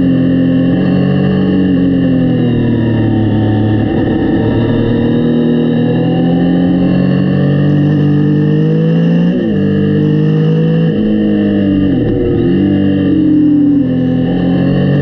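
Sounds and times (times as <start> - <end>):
motorcycle engine accelerating: 0.0 - 15.0.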